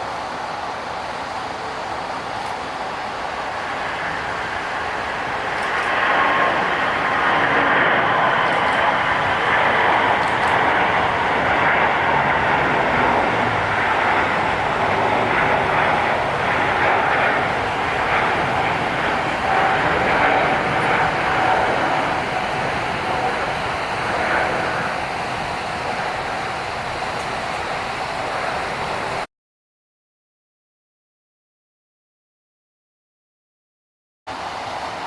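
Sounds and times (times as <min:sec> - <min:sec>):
jet engines roaring: 0:00.0 - 0:29.3, 0:34.3 - 0:35.0.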